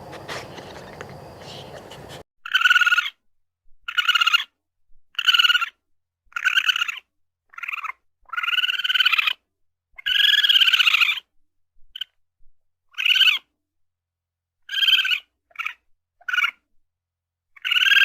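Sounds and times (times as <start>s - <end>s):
raccoon trilling calls: 0.0s - 3.2s, 3.9s - 4.5s, 5.2s - 9.4s, 10.0s - 11.2s, 12.9s - 13.4s, 14.7s - 16.6s, 17.6s - 18.0s.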